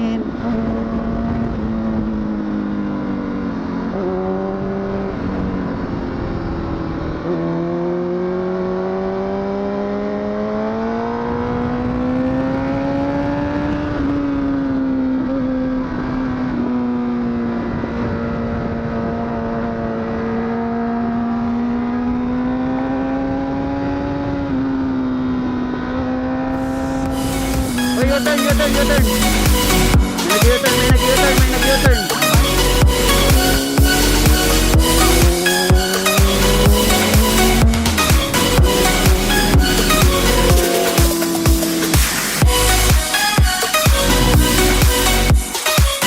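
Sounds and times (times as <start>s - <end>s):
rushing wind: 0.0s - 7.8s, 11.2s - 15.0s, 17.3s - 20.3s, 26.5s - 28.0s
motorcycle engine: 0.0s - 46.0s.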